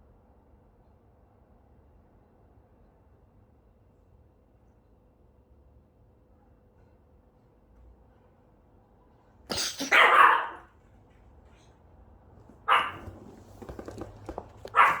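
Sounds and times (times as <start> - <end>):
small dog barking: 9.5 - 10.7, 12.6 - 15.0.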